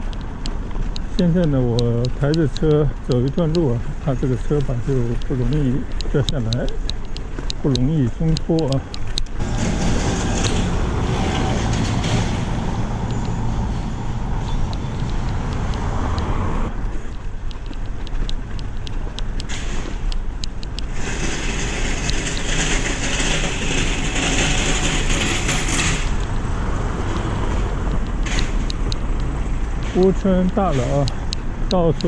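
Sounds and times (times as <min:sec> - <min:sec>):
bicycle clicks and rattles: 0:00.0 - 0:16.0, 0:16.7 - 0:26.4, 0:27.0 - 0:32.0
road noise: 0:00.0 - 0:32.0
wind rumble: 0:08.4 - 0:31.7.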